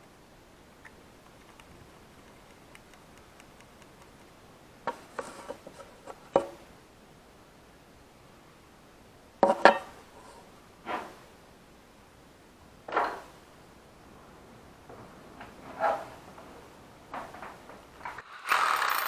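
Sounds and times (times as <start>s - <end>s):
tools clattering: 17.2s - 19.0s.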